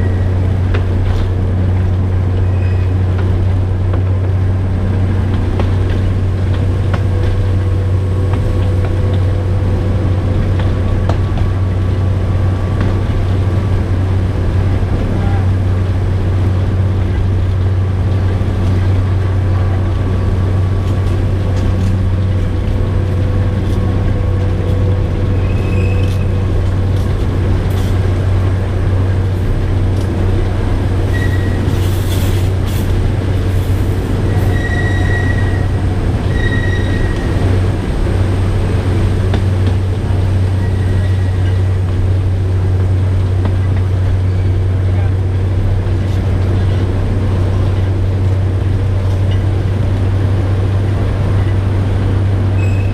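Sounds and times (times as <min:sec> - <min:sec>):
train engine and running gear drone: 0:00.0 - 0:52.9
wheel squeals: 0:02.4 - 0:03.0, 0:25.3 - 0:26.4, 0:31.1 - 0:32.4, 0:34.2 - 0:37.5, 0:40.5 - 0:41.7, 0:52.6 - 0:52.9.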